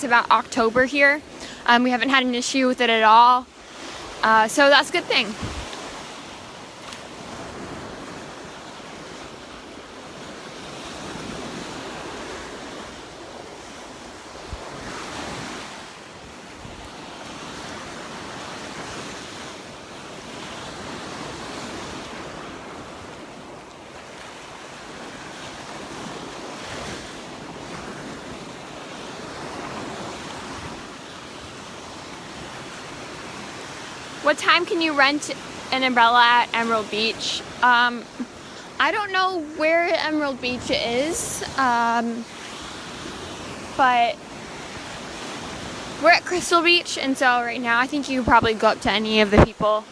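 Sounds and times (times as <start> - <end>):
surf washing onto beach: 0.0 - 49.9
wind buffeting microphone: 3.7 - 9.3, 31.5 - 49.8.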